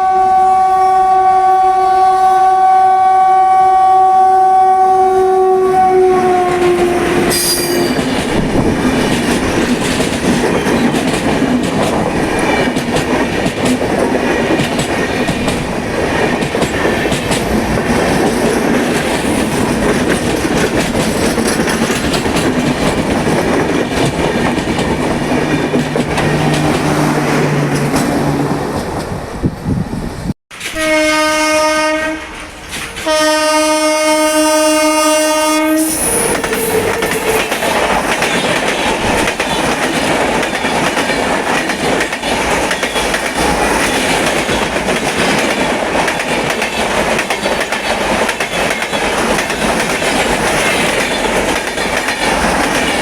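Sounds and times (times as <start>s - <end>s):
locomotive horn blast: 0.0s - 8.1s, 30.7s - 36.3s
passing train running noise: 0.0s - 53.0s.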